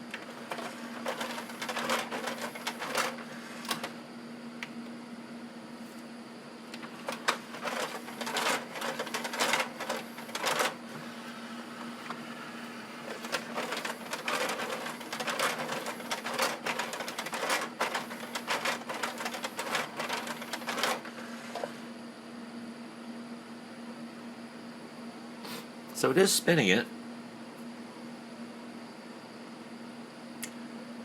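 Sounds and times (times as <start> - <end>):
steady low hum: 0.0 - 31.0
disc changer mechanism clicking: 0.1 - 4.0.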